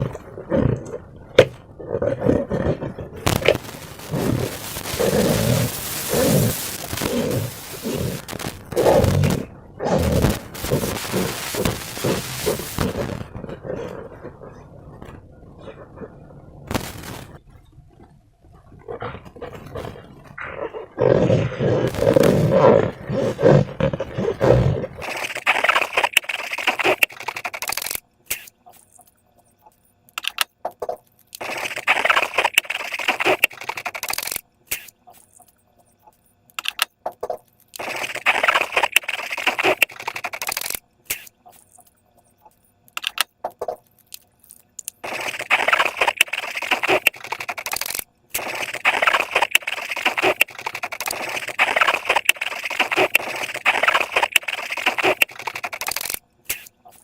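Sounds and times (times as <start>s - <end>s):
slime crackling and squishing: 3.2s - 13.4s.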